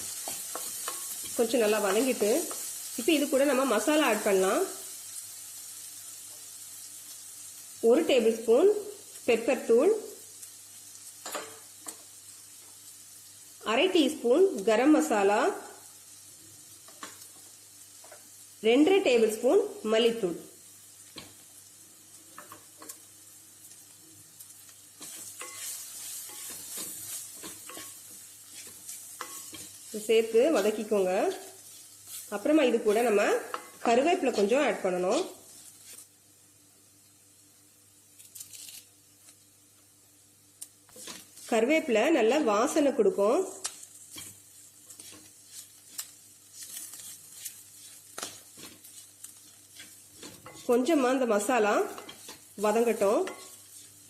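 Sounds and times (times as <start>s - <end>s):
onions sizzling in oil: 0.0s - 54.0s
spatula scraping pan: 25.0s - 36.0s, 40.9s - 41.8s, 44.0s - 54.0s.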